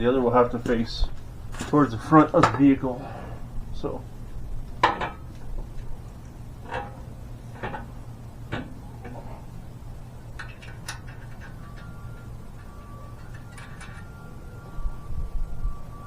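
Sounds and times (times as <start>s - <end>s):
steady low hum: 0.0s - 16.0s
metallic knocks and clinks: 10.4s - 14.3s.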